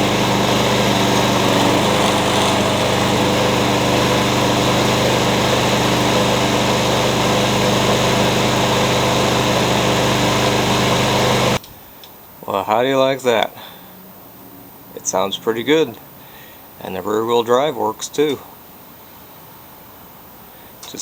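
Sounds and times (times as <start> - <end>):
lawn mower engine running: 0.0 - 11.6.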